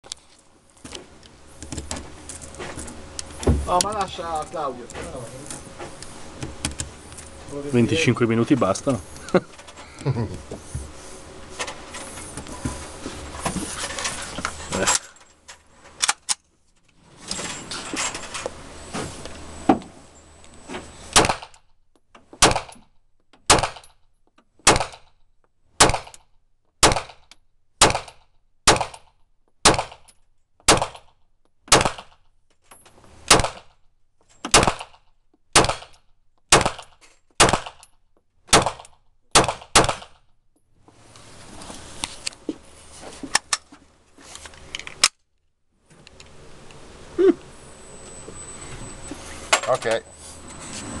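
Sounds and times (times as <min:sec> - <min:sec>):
pistol single shots: 0:21.2 - 0:21.6, 0:22.4 - 0:22.8, 0:23.5 - 0:23.8, 0:24.6 - 0:25.0, 0:25.8 - 0:26.2, 0:26.8 - 0:27.2, 0:27.8 - 0:29.0, 0:29.6 - 0:30.0, 0:31.7 - 0:32.1, 0:33.3 - 0:33.6, 0:34.5 - 0:35.0, 0:35.6 - 0:37.8, 0:38.5 - 0:40.2
gun handling noise: 0:43.2 - 0:45.2.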